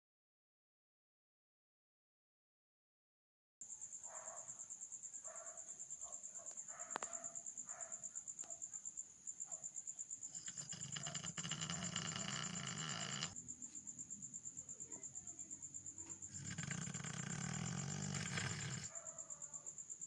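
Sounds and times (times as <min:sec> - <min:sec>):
high-pitched insect trill: 0:03.6 - 0:20.0
dog snoring: 0:10.3 - 0:13.4, 0:16.2 - 0:19.0.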